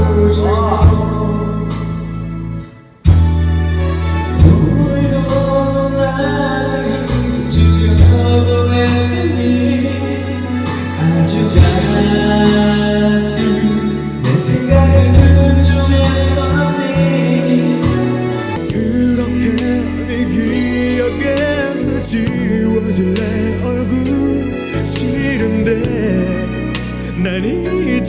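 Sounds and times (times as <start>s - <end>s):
person singing: 0.0s - 2.2s, 4.4s - 28.0s
karaoke backing track: 0.0s - 28.0s.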